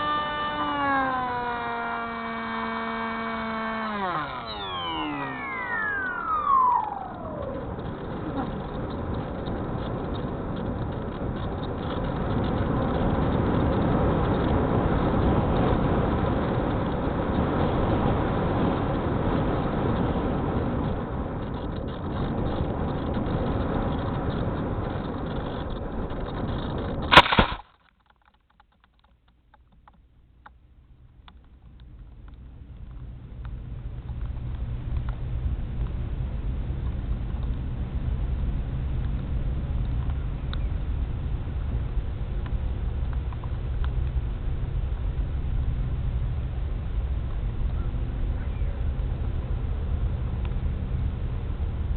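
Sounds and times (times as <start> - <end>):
model plane motor whine: 0.0 - 27.4
sharp loud crackle: 0.0 - 30.0.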